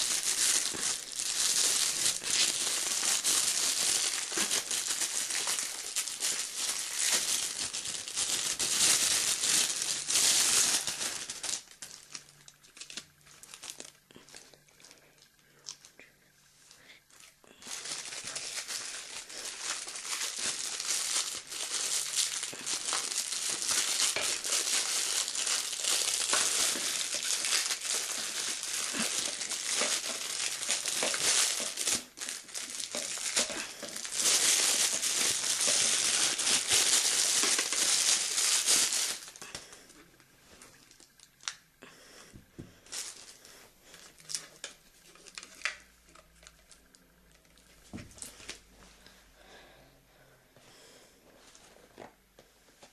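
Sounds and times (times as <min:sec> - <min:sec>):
packaging crinkling: 0:00.0 - 0:16.0, 0:16.8 - 0:41.6, 0:42.6 - 0:48.7.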